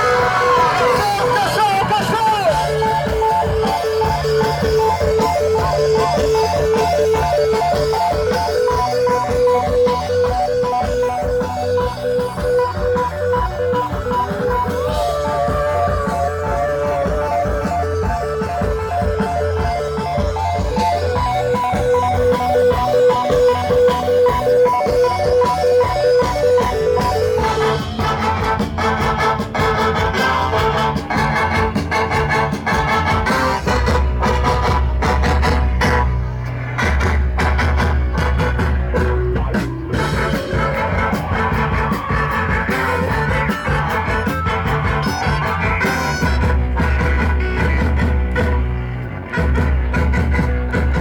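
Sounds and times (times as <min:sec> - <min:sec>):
bass guitar: 0:00.0 - 0:51.0
drum kit: 0:00.0 - 0:51.0
electric guitar riff: 0:00.0 - 0:51.0.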